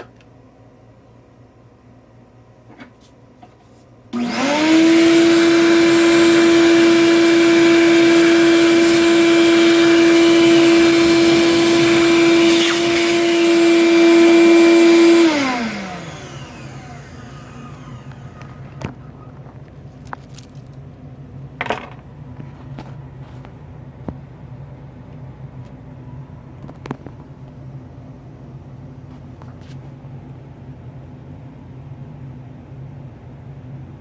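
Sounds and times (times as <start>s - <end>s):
electric motor humming: 4.2s - 18.9s.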